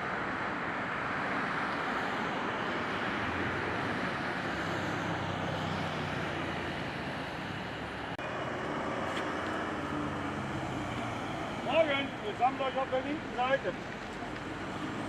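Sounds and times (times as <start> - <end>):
engine rumble: 1.8 - 15.0.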